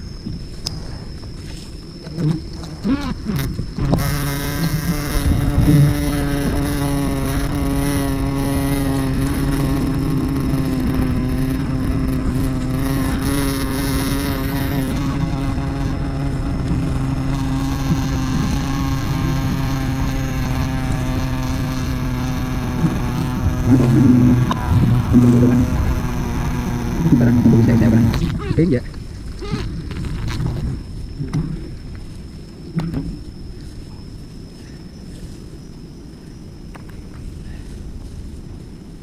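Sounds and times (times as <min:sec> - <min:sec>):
bees buzzing: 0:01.4 - 0:31.4.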